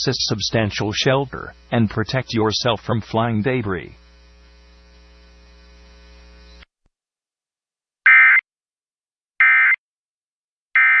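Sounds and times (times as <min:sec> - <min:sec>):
faint steady hum: 0:00.0 - 0:06.7.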